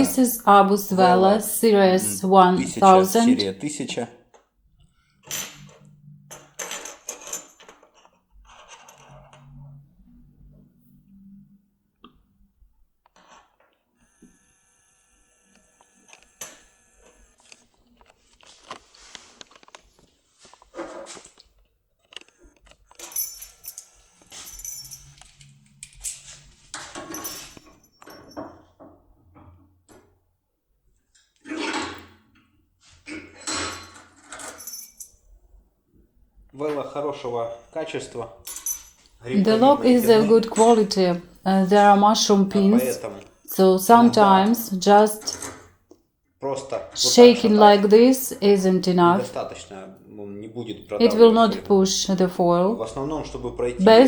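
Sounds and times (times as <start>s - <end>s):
small metal objects clinking: 22.9s - 28.6s, 33.5s - 35.2s, 38.4s - 39.1s.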